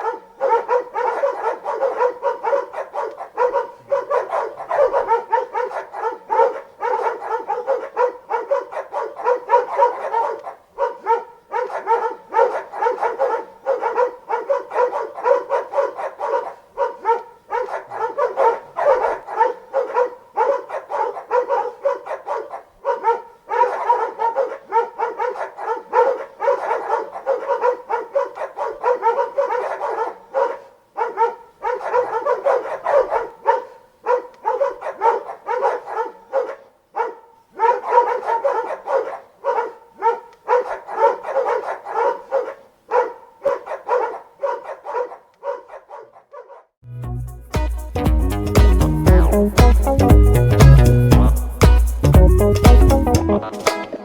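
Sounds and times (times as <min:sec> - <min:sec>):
dogs barking: 0:00.0 - 0:46.8, 0:48.2 - 0:53.3.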